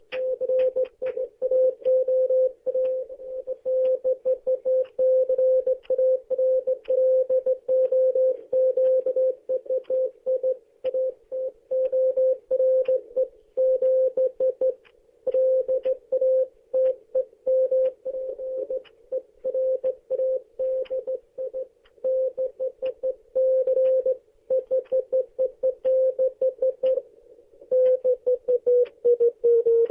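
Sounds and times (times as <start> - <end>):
morse code beeps: 0.2 - 27.0, 27.7 - 29.9.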